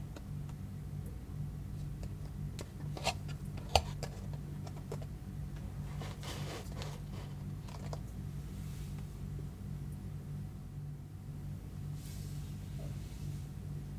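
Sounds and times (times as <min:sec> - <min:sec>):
low steady hum: 0:00.0 - 0:13.9
packaging rustling: 0:05.8 - 0:08.1.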